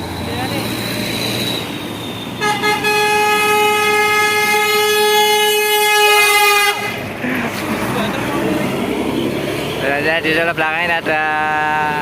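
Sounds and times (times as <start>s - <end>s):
traffic noise: 0.0s - 12.0s
bus horn blast: 2.4s - 7.1s.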